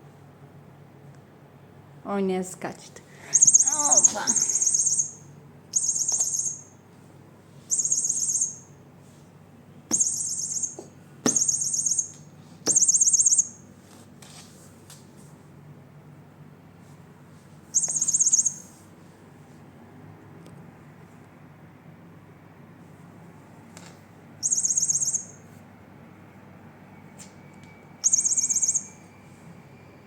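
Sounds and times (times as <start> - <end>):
toy mouse trilling chirps: 3.3 - 6.8, 7.7 - 8.8, 9.9 - 13.6, 17.7 - 18.7, 24.4 - 25.5, 28.0 - 29.1.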